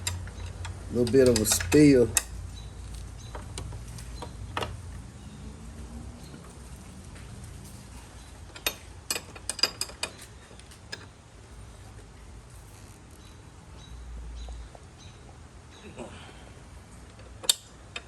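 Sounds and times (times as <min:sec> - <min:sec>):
tools clicking against metal: 0:00.0 - 0:02.4, 0:17.3 - 0:18.0.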